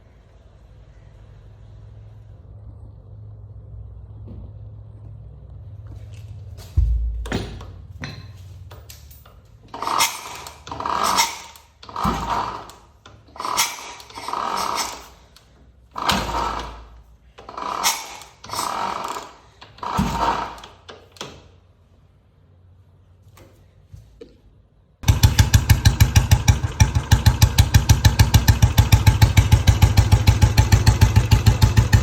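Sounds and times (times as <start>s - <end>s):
low thuds: 6.7s - 8.4s
motorcycle engine cutting out: 25.0s - 32.0s.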